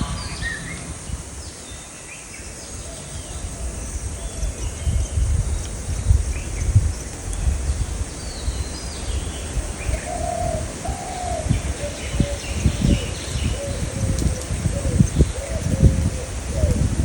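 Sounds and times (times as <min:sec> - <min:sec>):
low uneven rumbling: 0:00.0 - 0:02.2.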